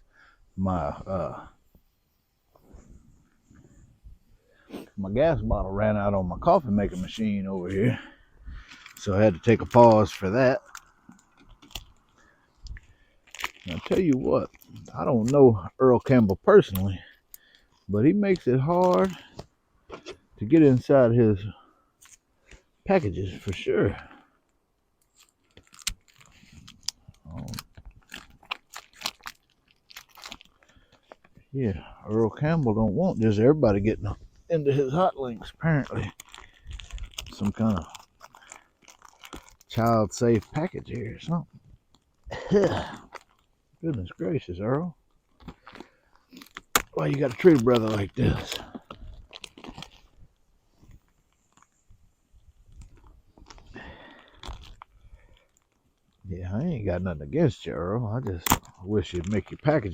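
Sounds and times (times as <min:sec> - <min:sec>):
plastic package crackling: 0:08.6 - 0:15.4, 0:25.0 - 0:31.5, 0:34.6 - 0:44.2, 0:45.0 - 0:51.8, 0:52.7 - 0:56.2.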